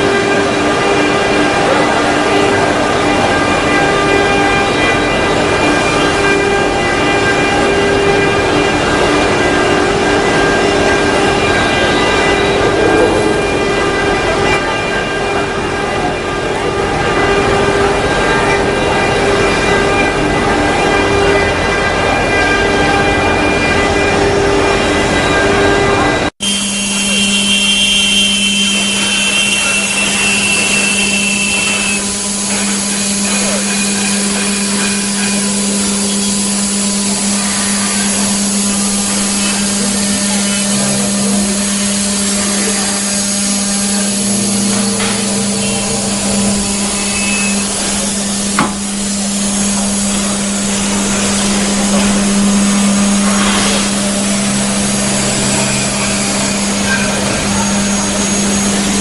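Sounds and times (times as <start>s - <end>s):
router spindle humming: 0.0s - 16.3s, 17.8s - 59.0s
sharp knock: 48.6s - 48.8s.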